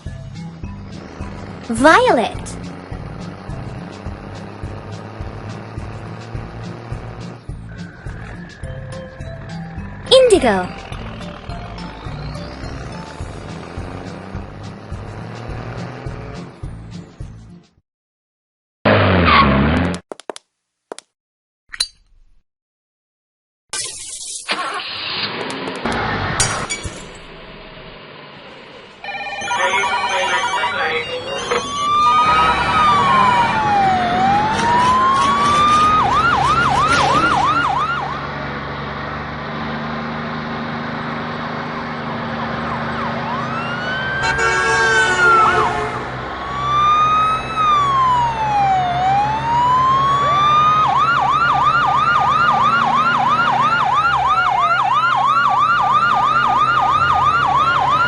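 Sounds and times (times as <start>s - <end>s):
engine hum: 0.0s - 17.6s, 24.5s - 58.0s
siren wailing and yelping: 29.0s - 38.2s, 42.6s - 44.5s, 46.4s - 58.0s
short horn blast: 44.2s - 46.2s.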